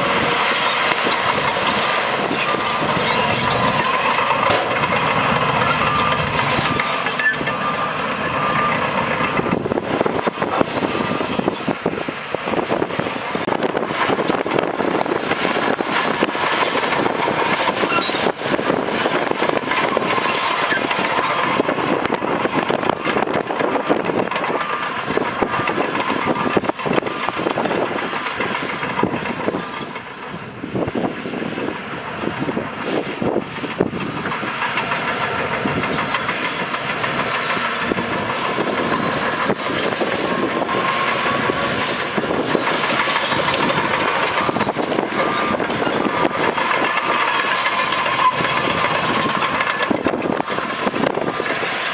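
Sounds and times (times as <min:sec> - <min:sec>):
diesel engine under load: 0:00.0 - 0:51.9
steel tracks clanking: 0:00.0 - 0:51.9
repeated beeping: 0:02.4 - 0:11.5.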